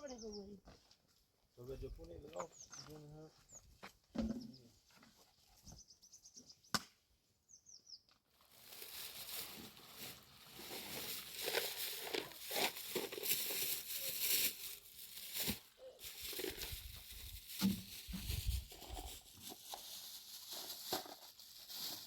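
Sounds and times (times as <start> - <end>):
high bird chirps: 7.5 - 8.0
loud rustling and crackling: 8.5 - 22.0.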